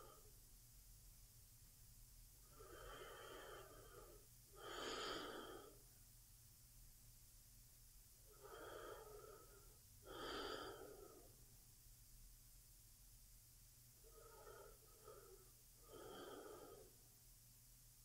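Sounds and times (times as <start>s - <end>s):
woman breathing slowly: 0.0s - 0.4s, 2.4s - 6.0s, 8.2s - 11.5s, 14.0s - 17.2s.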